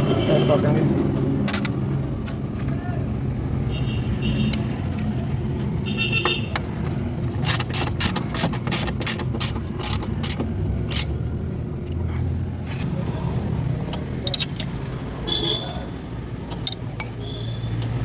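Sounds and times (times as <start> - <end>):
ratchet wrench clicking: 7.3 - 11.2, 14.2 - 14.8, 16.5 - 17.1.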